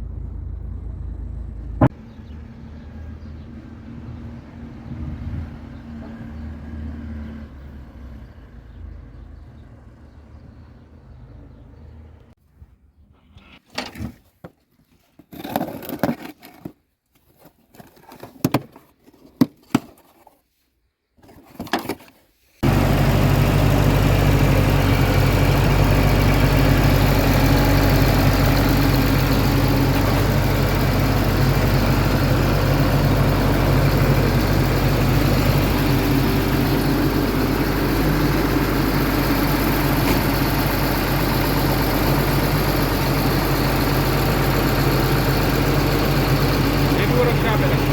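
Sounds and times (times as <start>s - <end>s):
diesel engine idling: 0.0s - 12.4s, 22.6s - 47.9s.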